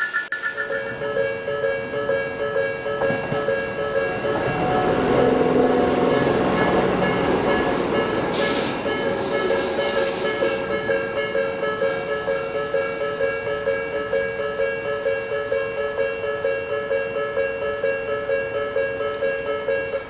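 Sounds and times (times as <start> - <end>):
electric train rolling: 0.0 - 20.0
level-crossing warning bell: 0.0 - 20.0
sharp hiss: 7.6 - 14.2.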